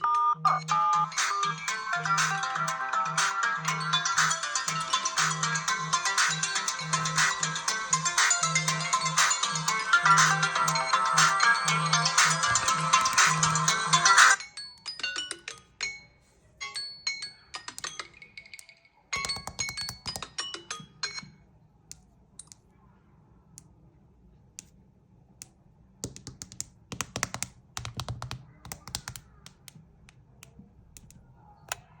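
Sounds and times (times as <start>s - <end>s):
smartphone clicks and taps: 19.2s - 20.3s, 25.4s - 31.9s.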